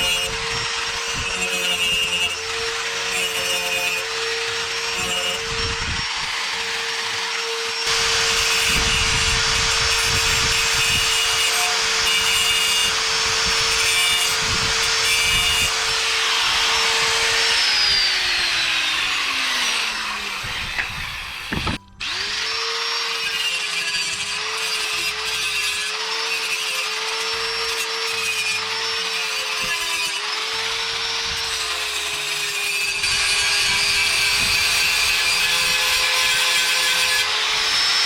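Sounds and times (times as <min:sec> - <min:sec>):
grinder motor whine: 0:00.0 - 0:24.5, 0:32.8 - 0:38.0
grinding on sheet steel: 0:00.0 - 0:38.0.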